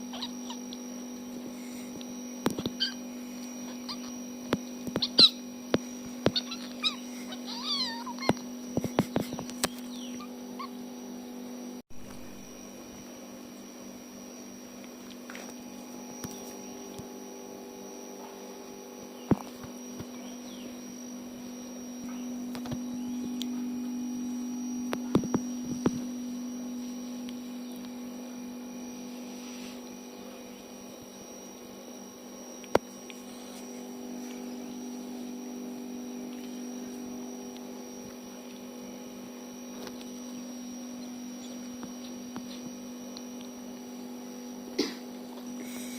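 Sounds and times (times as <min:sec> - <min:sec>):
kitten squeaking mews: 0:00.0 - 0:00.9, 0:02.5 - 0:05.5, 0:06.2 - 0:08.5, 0:09.9 - 0:10.7
steady low hum: 0:00.0 - 0:45.9.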